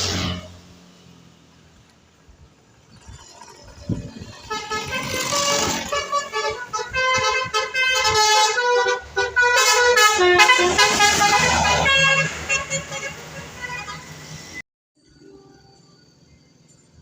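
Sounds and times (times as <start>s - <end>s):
multi-tone musical air horn: 4.3s - 14.2s.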